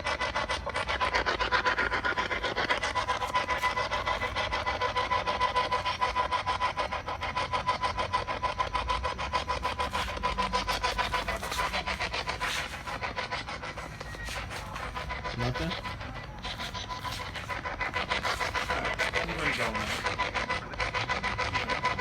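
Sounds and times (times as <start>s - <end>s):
pulsing static: 9.2s - 22.0s.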